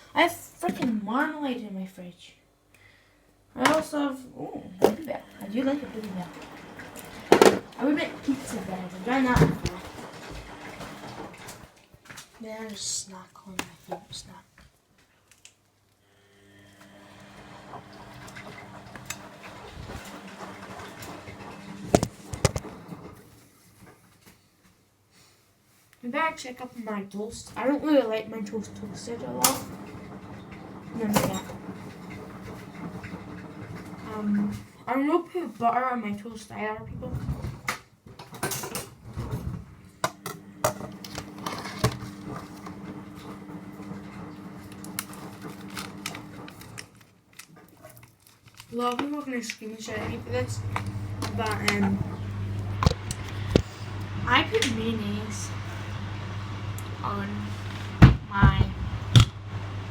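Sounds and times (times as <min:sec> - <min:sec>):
appliance humming: 0:03.4 - 0:12.0, 0:16.0 - 0:23.9, 0:27.4 - 0:34.9, 0:38.5 - 0:47.5, 0:49.8 - 0:59.9
kitchen things clicking and knocking: 0:04.8 - 0:11.7, 0:18.9 - 0:23.1.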